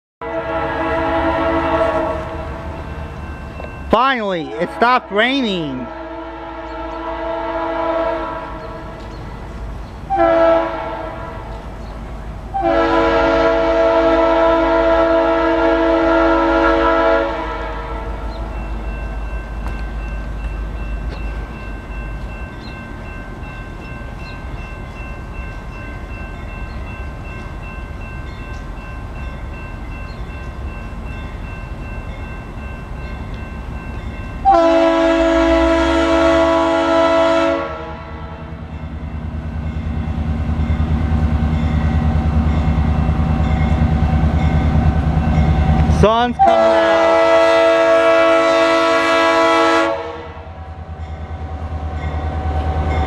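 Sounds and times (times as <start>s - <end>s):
locomotive air horn blast: 0.2s - 2.8s, 4.5s - 9.0s, 10.1s - 11.6s, 12.5s - 18.4s, 34.4s - 38.6s, 46.4s - 50.5s
low rumble of train: 0.2s - 53.0s.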